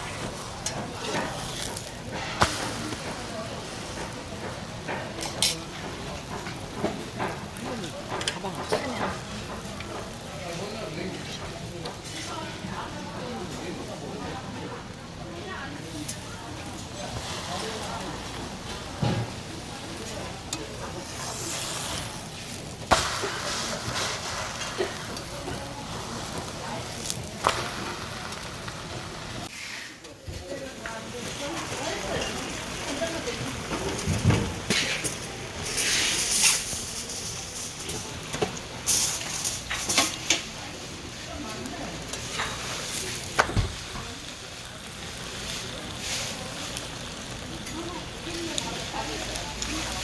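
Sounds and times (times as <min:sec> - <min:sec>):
faint voices: 0:00.0 - 0:50.0
pancake batter sizzling on griddle: 0:00.0 - 0:50.0
metal utensils scraping a pan: 0:34.7 - 0:38.2.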